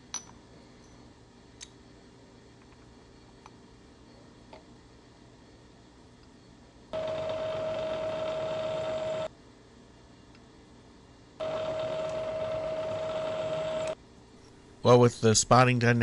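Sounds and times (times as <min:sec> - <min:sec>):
milling machine spindle whine: 0:07.0 - 0:09.3, 0:11.4 - 0:14.0.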